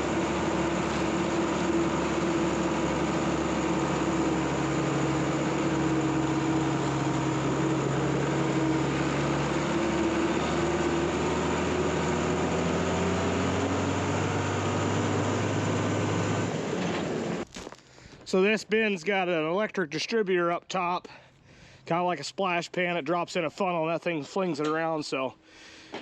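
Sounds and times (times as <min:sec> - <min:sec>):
motor engine running: 0:00.0 - 0:17.7.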